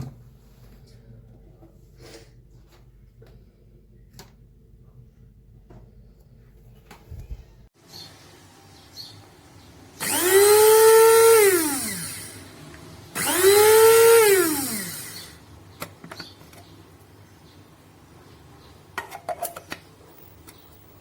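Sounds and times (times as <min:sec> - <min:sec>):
coffee grinder motor whining: 0:10.0 - 0:15.5.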